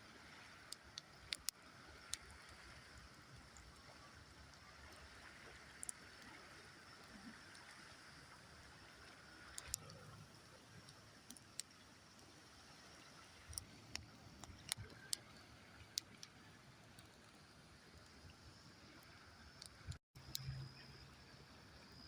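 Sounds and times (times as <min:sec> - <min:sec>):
river water flowing: 0:00.0 - 0:20.5
campfire crackling: 0:00.6 - 0:18.2.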